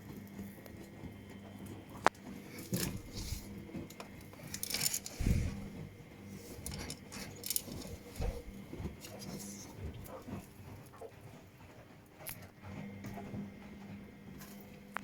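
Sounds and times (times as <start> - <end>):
washing machine low hum: 0.0 - 15.0
laundry clinks and rustles: 2.2 - 10.8.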